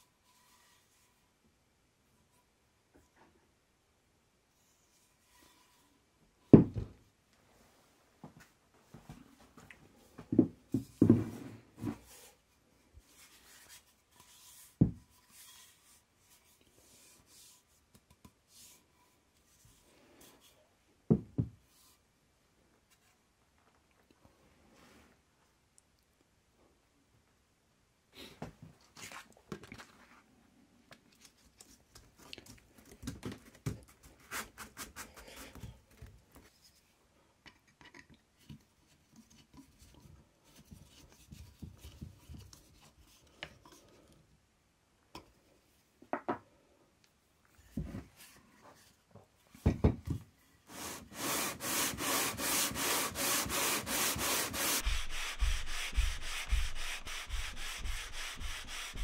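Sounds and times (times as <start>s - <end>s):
rhythmic rasping sanding strokes: 50.7s - 59.0s.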